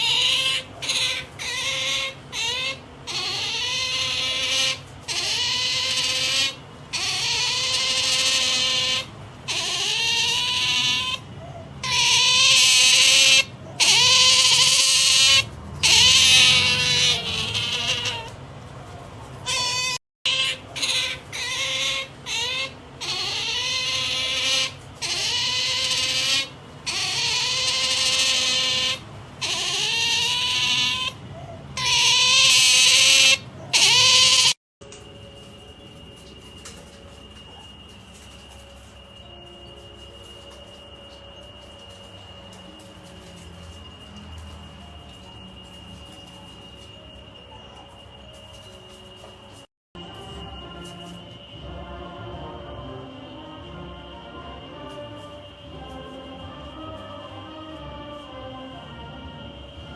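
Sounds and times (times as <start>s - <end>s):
otter high-pitched calls: 0.0s - 18.4s, 19.4s - 34.6s.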